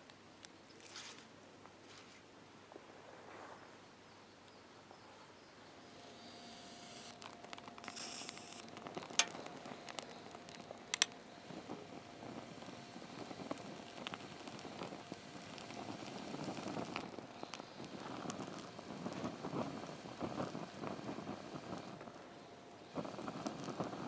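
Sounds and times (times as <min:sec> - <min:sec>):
campfire crackling: 0:05.6 - 0:24.0
sharp fire pops: 0:05.7 - 0:22.1, 0:22.9 - 0:24.0.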